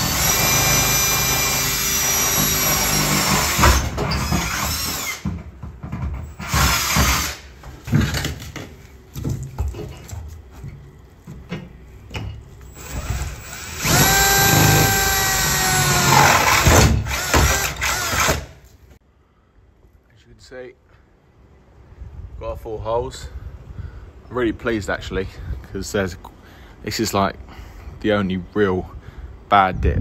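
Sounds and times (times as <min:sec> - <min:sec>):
power drill drilling through metal: 0:00.0 - 0:05.2, 0:06.4 - 0:07.4, 0:12.7 - 0:18.5.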